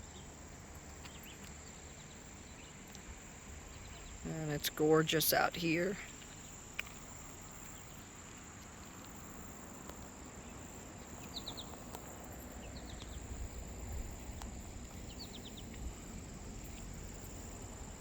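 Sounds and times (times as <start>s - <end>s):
insects droning: 0.0s - 18.0s
bird chirping: 10.4s - 11.8s, 14.9s - 15.8s.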